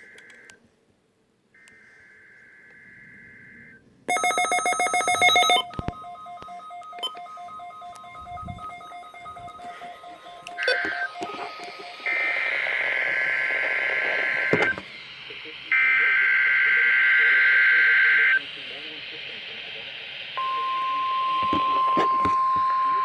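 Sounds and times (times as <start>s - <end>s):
faint static: 0.0s - 23.0s
steady and beeping tones: 2.6s - 23.0s
buzzy alert data burst: 2.9s - 23.0s
pulsing electronic alert tone: 3.4s - 14.9s.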